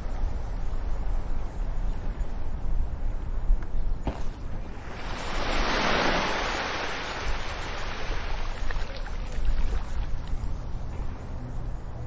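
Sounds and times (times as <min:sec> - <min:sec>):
low rumble of surf: 0:00.0 - 0:12.0
ocean wave breaking: 0:04.4 - 0:09.5.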